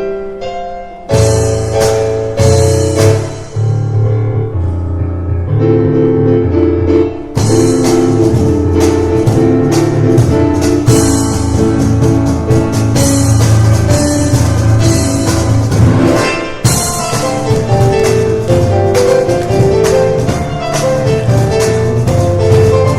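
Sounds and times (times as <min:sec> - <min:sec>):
piano chords: 0:00.0 - 0:22.9
cajon strikes: 0:07.4 - 0:22.9.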